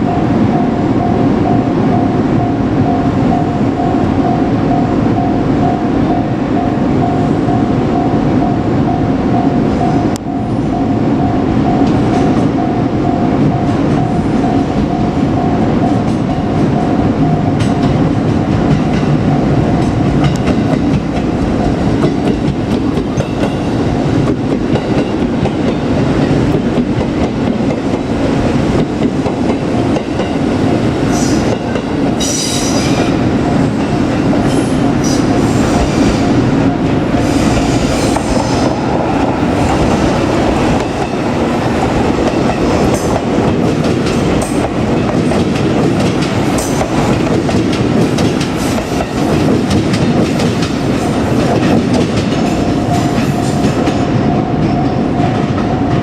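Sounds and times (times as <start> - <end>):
steady high tone: 0.0 - 18.2, 29.6 - 45.1
train wheels rumbling over rails: 0.0 - 56.0
high-pitched squeals: 34.4 - 43.1.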